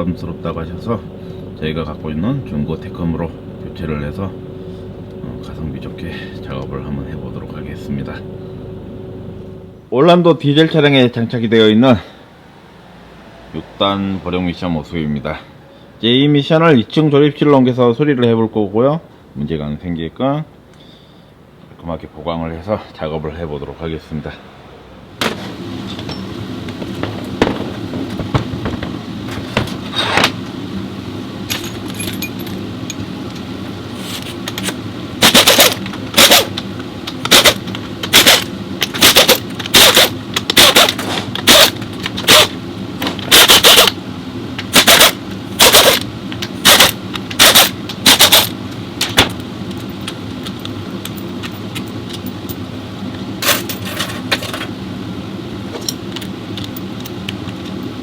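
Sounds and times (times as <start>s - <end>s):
workshop hum: 0.0s - 58.0s
pneumatic impact wrench bursts: 34.0s - 36.6s, 37.2s - 42.6s, 43.2s - 44.0s, 44.7s - 48.6s.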